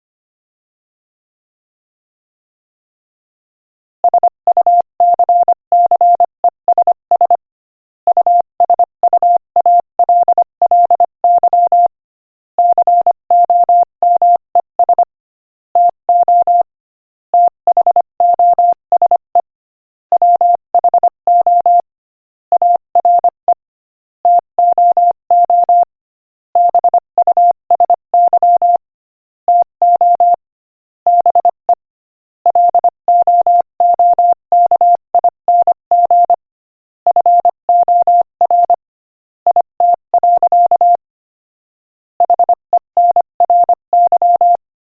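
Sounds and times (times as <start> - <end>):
morse code beeps: 4.1 - 7.4, 8.1 - 11.9, 12.6 - 15.1, 15.8 - 16.7, 17.4 - 19.5, 20.2 - 21.8, 22.6 - 23.6, 24.3 - 25.9, 26.6 - 28.8, 29.5 - 30.4, 31.1 - 31.8, 32.4 - 36.4, 37.1 - 38.8, 39.5 - 41.0, 42.2 - 44.6.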